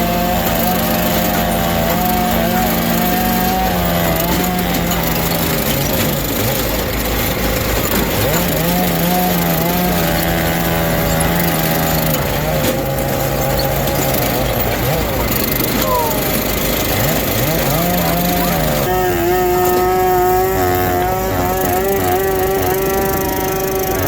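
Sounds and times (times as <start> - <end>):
small petrol engine running: 0.0 - 24.0.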